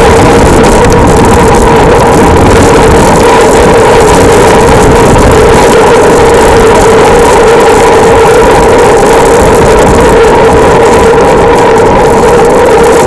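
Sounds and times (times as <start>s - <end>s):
constant hum: 0.0s - 13.0s
vehicle engine rumble: 0.0s - 13.0s.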